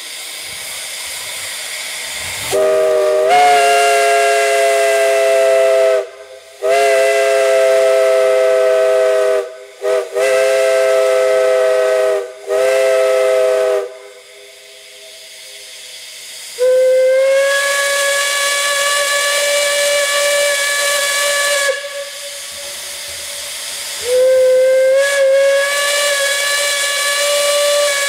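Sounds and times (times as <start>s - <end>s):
steam hissing: 0.0s - 28.0s
steam chime whistle blasts: 2.5s - 15.9s, 16.5s - 28.0s.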